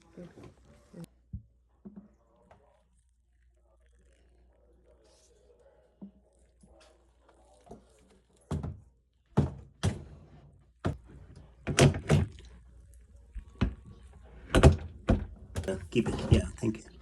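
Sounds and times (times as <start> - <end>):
knocks of refrigerator parts handled: 8.5 - 10.1.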